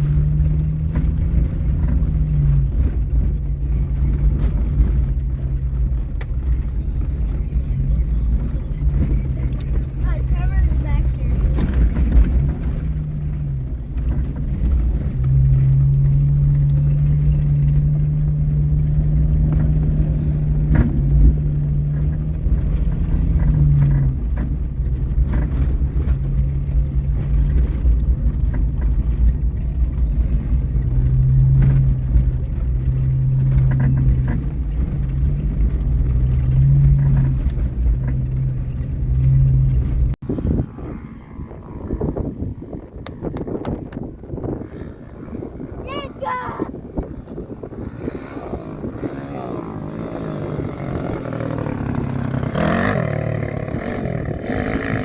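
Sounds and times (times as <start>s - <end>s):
knocks and rattles from bumps: 0.0s - 55.0s
off-road vehicle engine: 0.0s - 55.0s.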